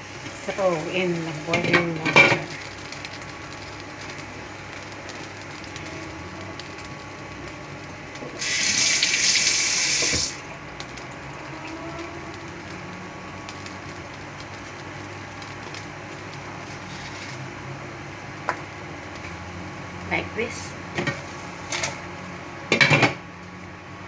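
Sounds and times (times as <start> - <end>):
kitchen tap running: 8.2 - 13.0.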